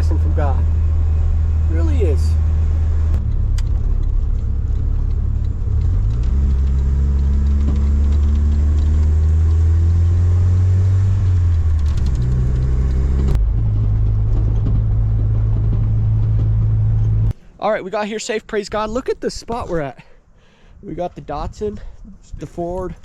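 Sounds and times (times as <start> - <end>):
vehicle engine and road drone: 0.0 - 17.6.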